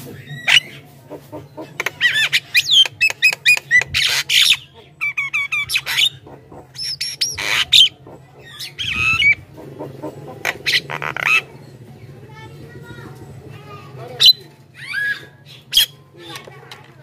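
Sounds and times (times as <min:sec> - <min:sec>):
bird whistling and squawking: 0:02.0 - 0:09.4, 0:14.2 - 0:16.0.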